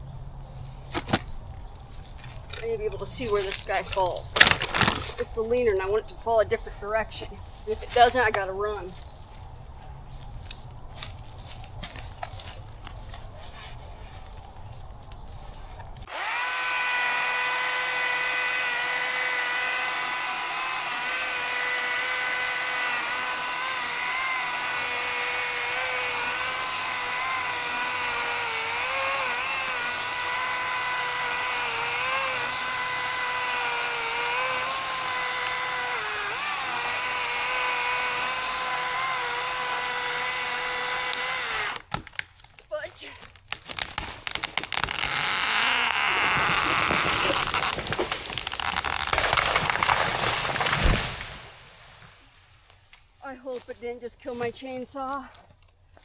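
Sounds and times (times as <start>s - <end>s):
electric chainsaw whining: 2.2s - 5.4s, 16.0s - 41.9s, 44.2s - 50.8s.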